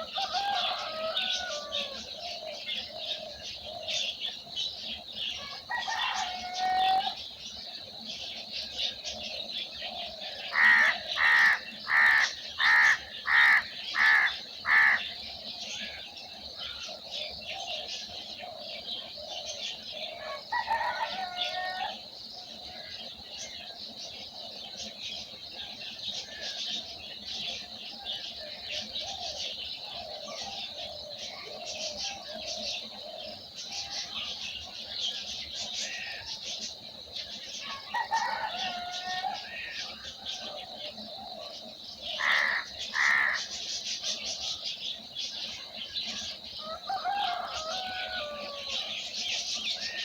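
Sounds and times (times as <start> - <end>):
small birds twittering: 0.0 - 50.0
larger bird loud calls: 10.5 - 15.1, 42.2 - 43.5.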